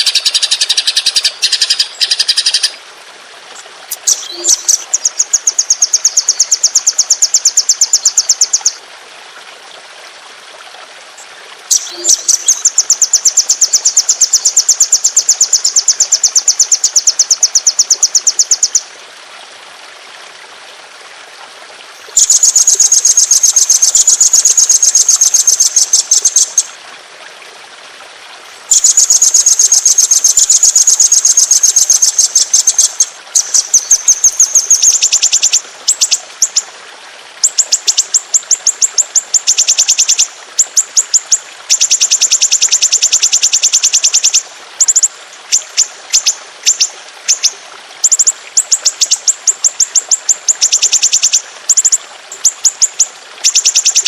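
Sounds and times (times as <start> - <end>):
songbird trilling: 0.0 - 2.8, 3.9 - 8.8, 11.7 - 18.8, 22.2 - 26.7, 28.7 - 36.6, 41.0 - 54.0.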